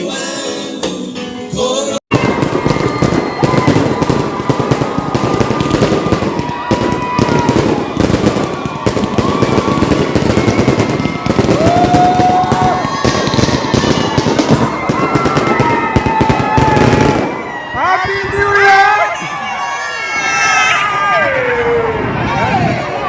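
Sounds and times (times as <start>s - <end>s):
firecrackers crackling: 2.1s - 17.6s.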